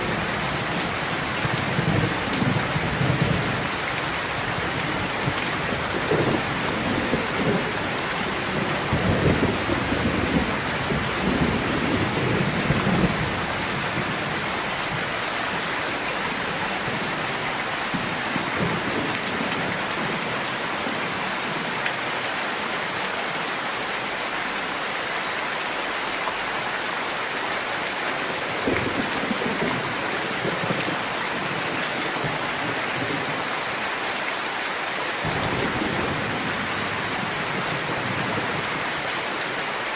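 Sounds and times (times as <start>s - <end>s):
low rolling thunder: 0.0s - 20.4s, 35.2s - 39.0s
heavy rain: 0.0s - 39.9s.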